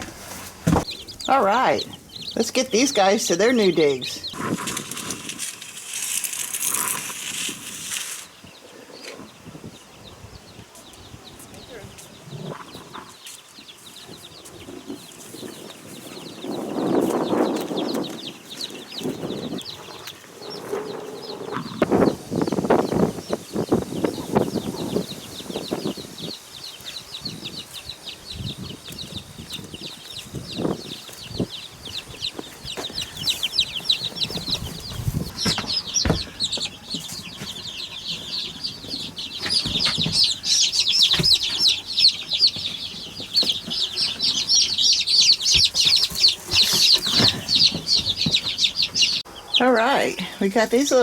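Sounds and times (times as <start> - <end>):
handling knocks: 0.0 - 1.0, 33.8 - 44.5
chicks peeping: 0.0 - 51.0.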